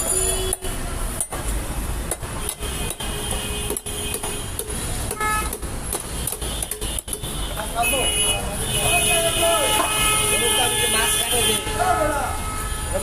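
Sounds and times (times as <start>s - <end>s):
traffic rumble: 0.0s - 13.0s
vehicle horn toot: 5.2s - 5.6s, 7.8s - 13.0s.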